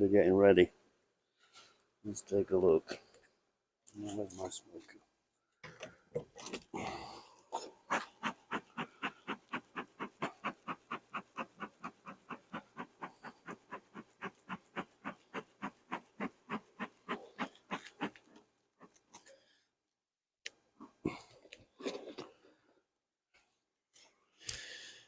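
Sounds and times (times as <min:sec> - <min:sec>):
bellows puffing air: 0:07.9 - 0:18.2.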